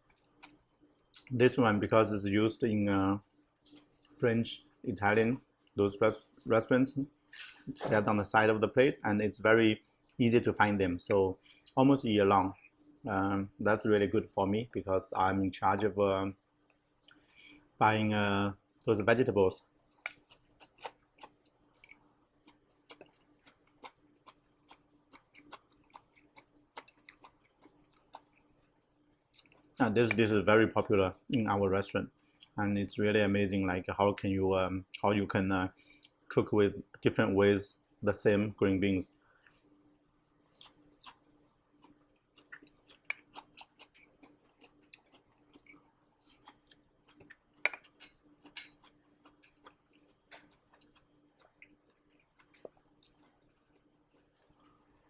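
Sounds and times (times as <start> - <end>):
person chewing softly: 0.0 - 1.4, 3.0 - 4.8, 5.4 - 8.2, 9.7 - 14.9, 15.7 - 17.8, 18.5 - 32.6, 34.0 - 37.0, 39.0 - 55.0
faint steady hum: 0.0 - 55.0.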